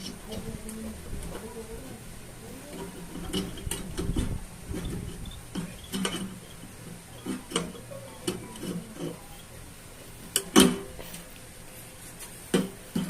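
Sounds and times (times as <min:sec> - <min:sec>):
hand tools clicking on metal: 0:02.7 - 0:09.5.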